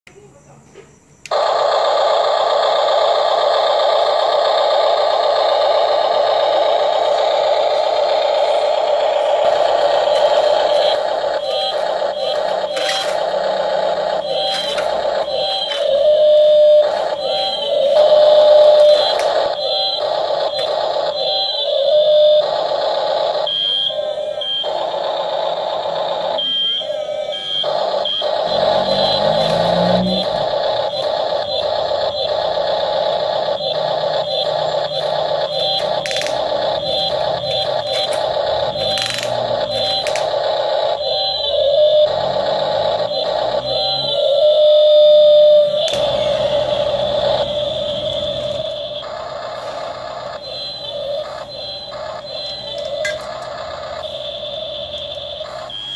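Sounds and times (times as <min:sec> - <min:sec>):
low rumbling electronic pattern: 0:01.3 - 0:55.7
toy electric motor whirring: 0:03.8 - 0:24.3, 0:28.4 - 0:53.5
synthetic tones: 0:05.4 - 0:55.9
clicks: 0:34.9 - 0:40.5.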